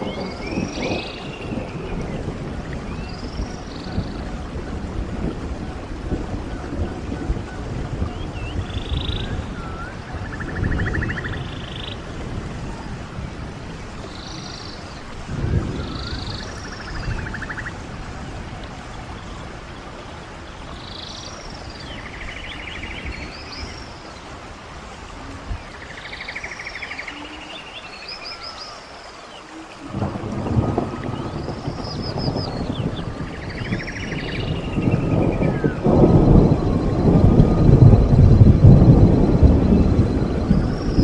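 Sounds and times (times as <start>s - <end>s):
stream running: 0.0s - 41.0s
birds whistling: 15.7s - 17.7s.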